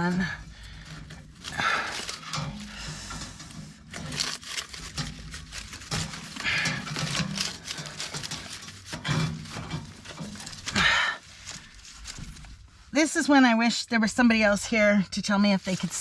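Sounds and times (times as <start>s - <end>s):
wire scraping under floor: 0.0s - 13.0s.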